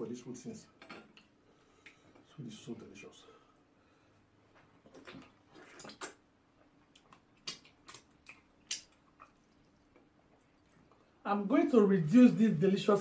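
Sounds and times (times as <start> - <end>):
lip smacking and wet chewing: 4.8 - 11.2.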